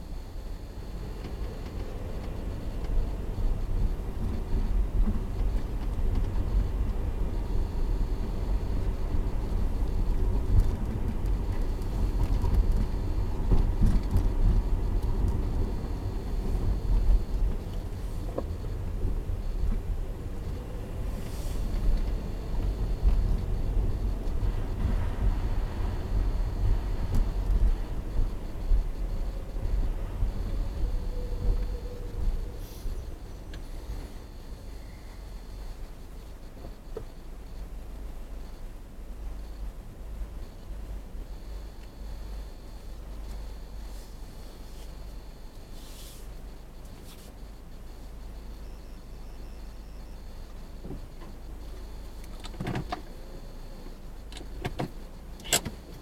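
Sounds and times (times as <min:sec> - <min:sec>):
low vehicle rumble: 0:00.0 - 0:55.4
faint high-pitched tone: 0:14.4 - 0:55.9.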